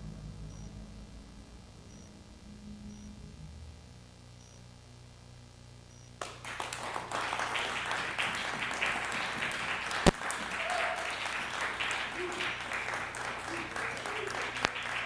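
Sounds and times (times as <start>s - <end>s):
low electrical hum: 0.0s - 15.0s
audience applause: 6.2s - 15.0s
sharp loud clap: 6.2s - 15.0s.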